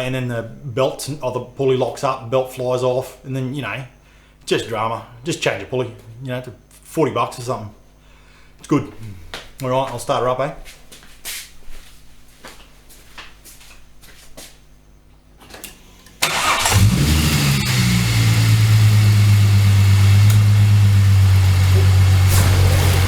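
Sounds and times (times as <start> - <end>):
car engine starting and idling: 16.2 - 23.0.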